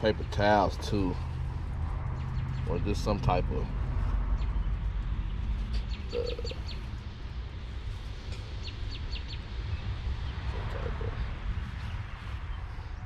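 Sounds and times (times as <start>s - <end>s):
bird chirping: 4.4s - 6.9s.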